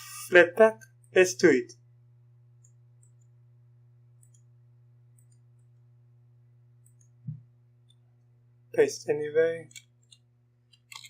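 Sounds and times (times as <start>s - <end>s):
low electrical hum: 0.0s - 11.0s
computer mouse clicks: 4.2s - 4.5s.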